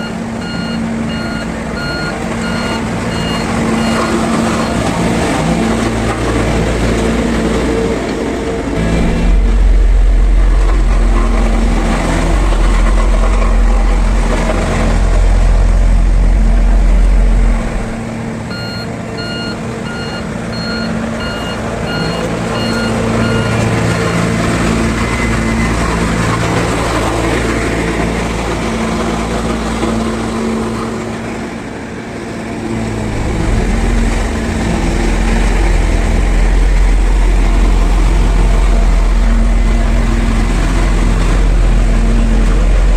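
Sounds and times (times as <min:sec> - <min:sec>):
reversing alarm beeping: 0:00.0 - 0:05.2, 0:08.8 - 0:26.2
diesel engine rumbling: 0:00.0 - 0:42.9.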